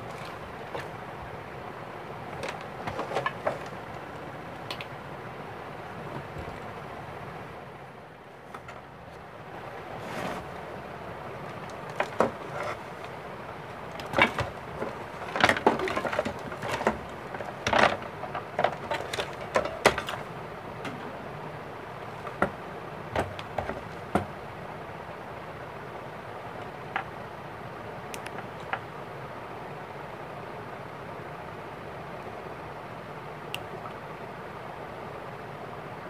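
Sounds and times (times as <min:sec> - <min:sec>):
steady background hiss: 0:00.0 - 0:36.0
objects clicking and clattering: 0:13.9 - 0:20.3.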